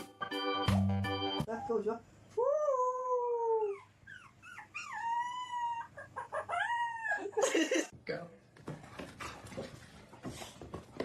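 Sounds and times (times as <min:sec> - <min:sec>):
dog whining and howling: 0:02.4 - 0:07.4
dog yelping: 0:03.5 - 0:07.4.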